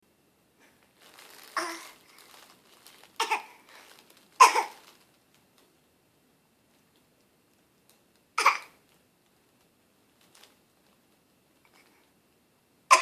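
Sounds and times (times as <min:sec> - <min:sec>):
child fake coughing: 0:03.2 - 0:03.6, 0:04.4 - 0:04.8, 0:08.4 - 0:08.8.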